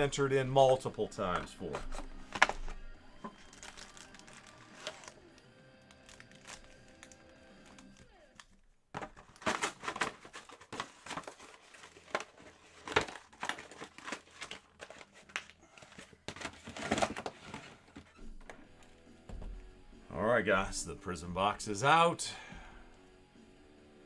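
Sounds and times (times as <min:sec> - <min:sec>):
plastic wrap crinkling and tearing: 0:00.8 - 0:18.8.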